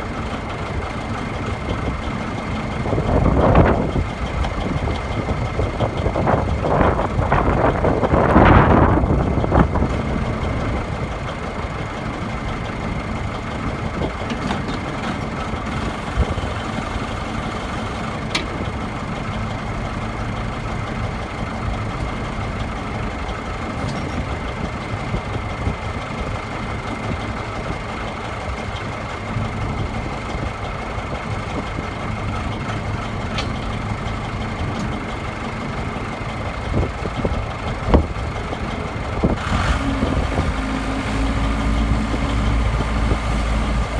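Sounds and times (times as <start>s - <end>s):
diesel engine idling: 0.0s - 43.9s
steady whining tone: 13.9s - 43.9s.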